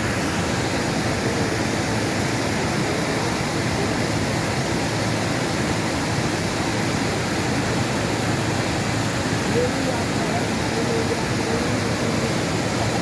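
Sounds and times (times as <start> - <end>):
stream water rushing: 0.0 - 13.0.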